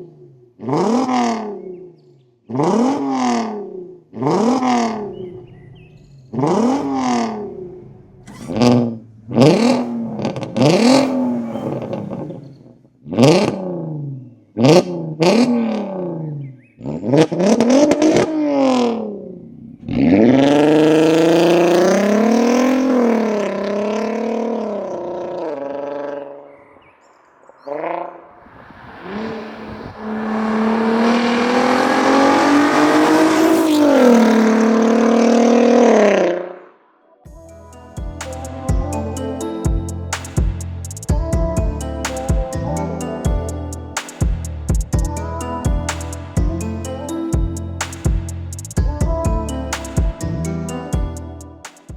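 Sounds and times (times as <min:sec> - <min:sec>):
car engine revving: 0:00.6 - 0:01.8, 0:02.4 - 0:36.8.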